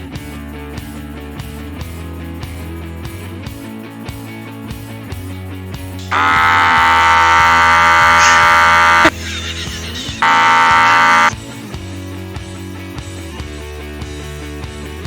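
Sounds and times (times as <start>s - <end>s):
air horn blasting: 6.1s - 9.1s, 10.2s - 11.3s.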